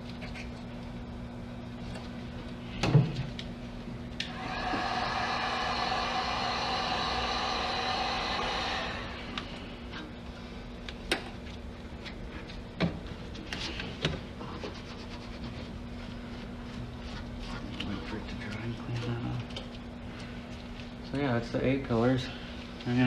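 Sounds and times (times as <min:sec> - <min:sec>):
blowing motor: 0:04.2 - 0:09.9.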